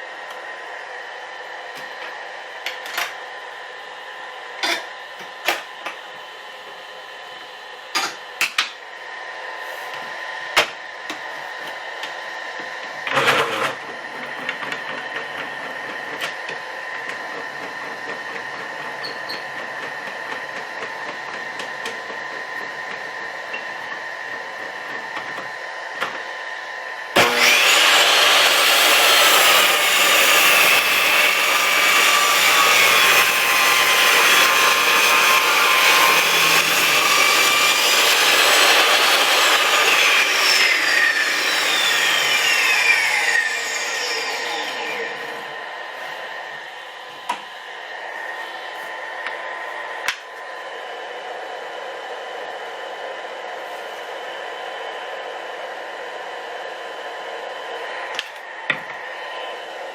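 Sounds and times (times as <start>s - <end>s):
table saw whining: 0.0s - 59.9s
saw blade ripping wood: 27.2s - 45.0s.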